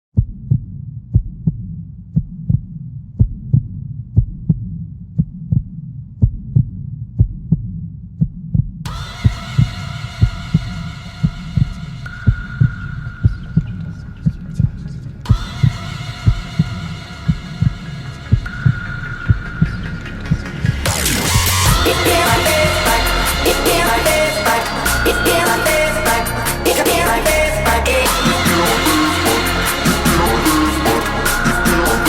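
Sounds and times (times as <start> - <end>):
heartbeat-like double thumps: 0.1 - 32.0
held chord of steady tones: 21.3 - 32.0.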